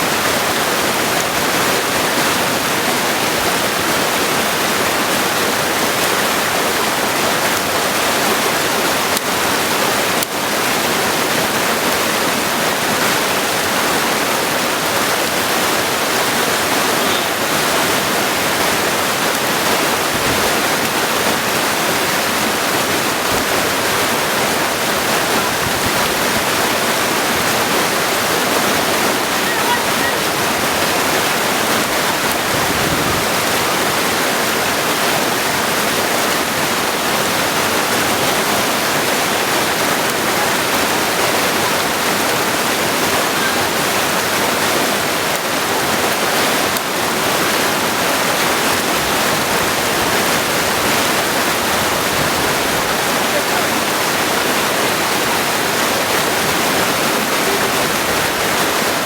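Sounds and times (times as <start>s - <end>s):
stream rushing over stones: 0.0s - 59.0s.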